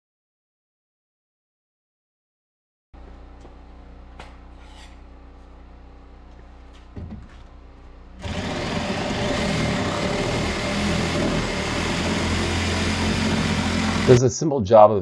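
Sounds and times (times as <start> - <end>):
engine-like mechanical running noise: 3.0 - 14.2.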